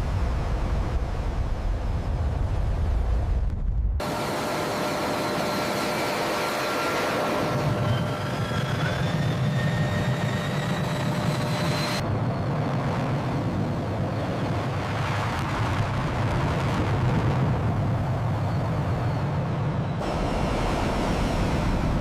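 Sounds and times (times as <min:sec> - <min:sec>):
jet engines roaring with whine: 0:00.0 - 0:22.0.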